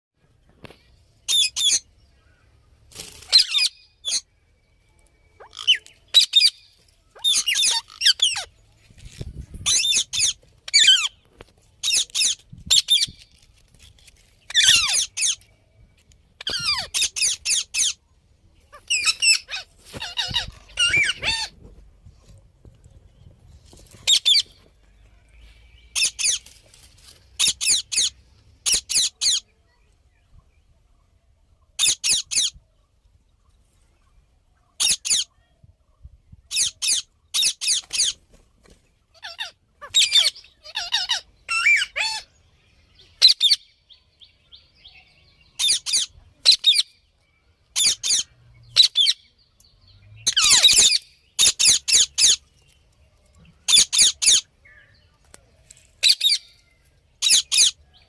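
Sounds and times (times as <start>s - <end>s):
parakeet high-pitched calls: 5.4s - 8.5s, 14.5s - 15.4s, 16.4s - 18.0s, 18.7s - 21.5s, 31.8s - 32.6s, 39.2s - 42.2s, 45.6s - 46.9s, 47.8s - 49.2s, 50.3s - 52.4s, 53.7s - 54.5s, 57.2s - 57.8s.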